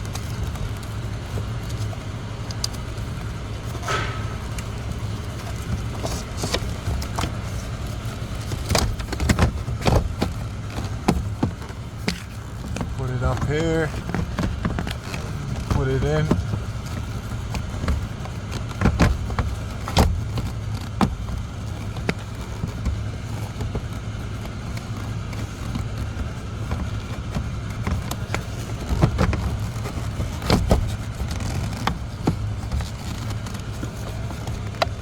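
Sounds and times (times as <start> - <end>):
steady low rumble: 0.0 - 18.2
plastic knocks and clicks: 2.5 - 35.0.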